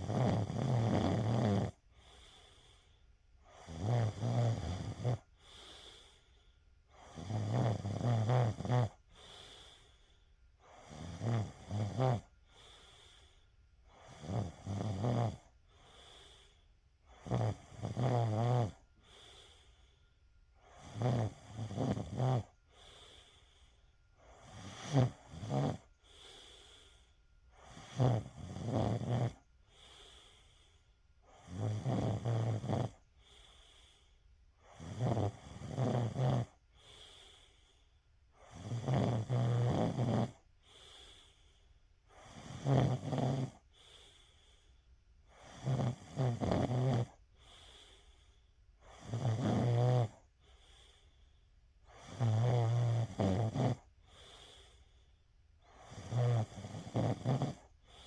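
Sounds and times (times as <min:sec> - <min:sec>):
woman snoring: 0:00.0 - 0:02.3, 0:03.4 - 0:05.6, 0:06.9 - 0:09.5, 0:10.6 - 0:12.6, 0:13.9 - 0:16.3, 0:17.1 - 0:19.5, 0:20.6 - 0:23.2, 0:24.2 - 0:26.4, 0:27.6 - 0:30.2, 0:31.2 - 0:33.1, 0:34.6 - 0:37.2, 0:38.4 - 0:41.2, 0:42.1 - 0:43.7, 0:45.3 - 0:48.0, 0:48.8 - 0:50.3, 0:51.9 - 0:54.7, 0:55.6 - 0:58.0
soft breathing: 0:01.7 - 0:03.8, 0:04.9 - 0:07.3, 0:08.9 - 0:14.6, 0:15.3 - 0:18.0, 0:18.7 - 0:31.6, 0:32.3 - 0:35.8, 0:36.4 - 0:39.3, 0:40.3 - 0:42.7, 0:43.4 - 0:46.3, 0:47.0 - 0:49.4, 0:50.0 - 0:52.3, 0:53.0 - 0:58.0.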